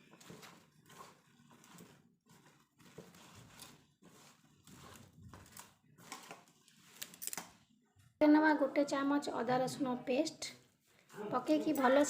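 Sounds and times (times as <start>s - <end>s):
food rustling and squishing in bowl: 0.0s - 8.2s.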